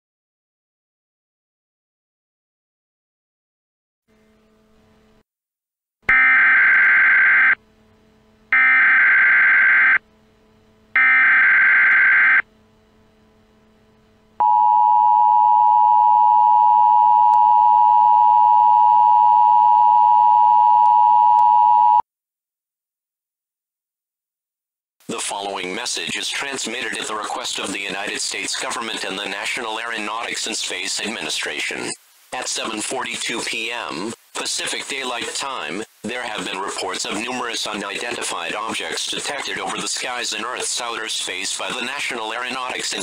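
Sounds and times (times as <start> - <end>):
steady two-tone alert signal: 6.1 - 7.6, 8.5 - 10.0, 11.0 - 12.5
buzzy screech data bursts: 8.6 - 10.0, 11.0 - 12.4.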